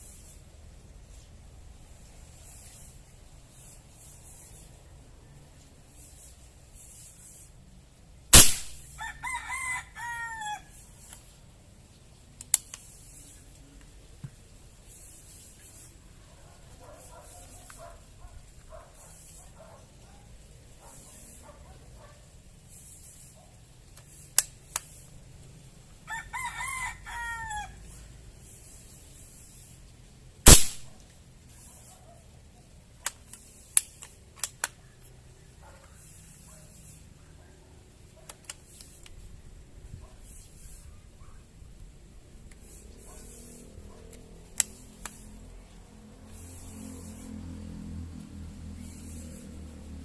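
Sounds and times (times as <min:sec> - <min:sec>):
loud airgun shot: 0:08.3 - 0:09.0, 0:30.5 - 0:31.0
rooster crowing: 0:08.9 - 0:10.8, 0:26.0 - 0:27.9
sharp clicks: 0:12.4 - 0:12.9.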